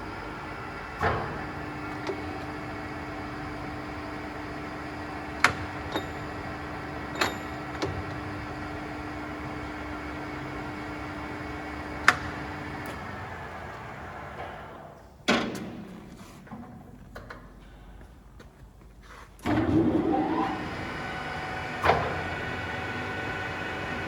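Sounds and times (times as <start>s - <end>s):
lathe humming: 0.0s - 14.4s.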